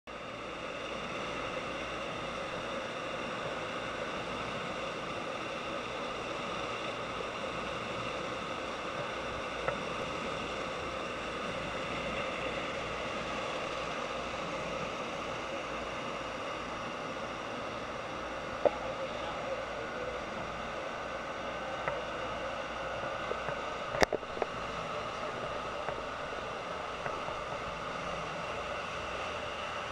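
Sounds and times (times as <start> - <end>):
boat engine droning: 0.1 - 29.9.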